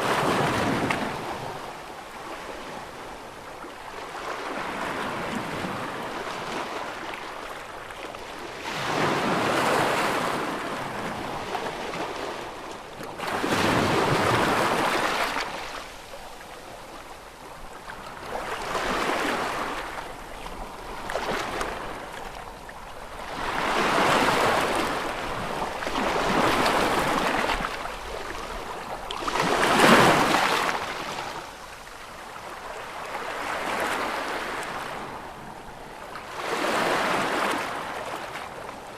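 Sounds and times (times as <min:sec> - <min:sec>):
ocean waves breaking: 0:04.1 - 0:22.5, 0:23.1 - 0:35.4.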